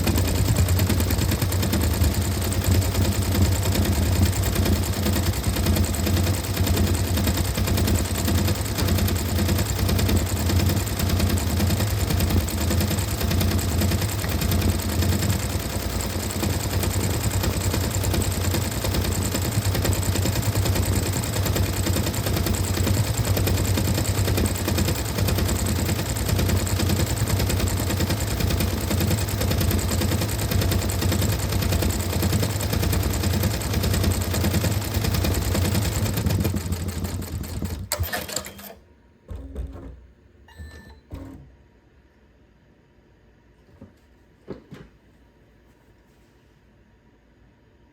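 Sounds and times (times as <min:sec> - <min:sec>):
sewing machine stitching: 0:00.0 - 0:40.0.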